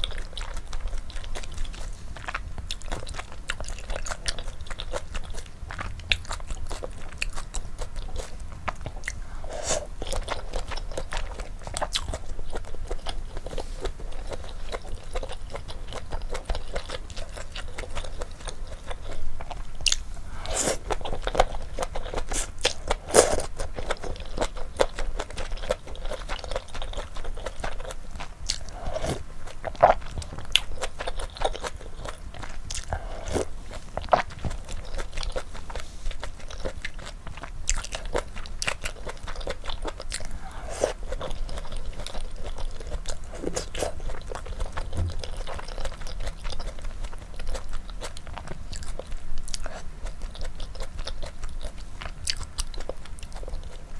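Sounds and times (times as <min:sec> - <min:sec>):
chewing and biting: 0:00.0 - 0:53.9
slurping: 0:09.3 - 0:10.2, 0:20.3 - 0:21.2, 0:28.6 - 0:29.2, 0:32.7 - 0:34.4, 0:40.2 - 0:41.2, 0:43.1 - 0:44.6.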